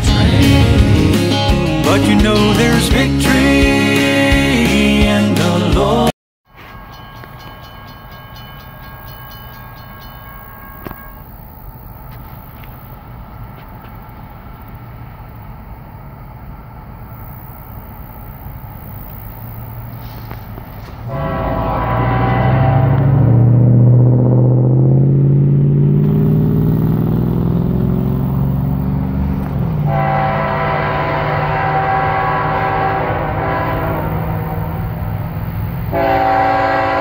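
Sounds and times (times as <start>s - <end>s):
passing freight train rumble: 0.0s - 5.8s, 6.5s - 37.0s
locomotive air horn: 20.0s - 23.7s, 29.7s - 37.0s.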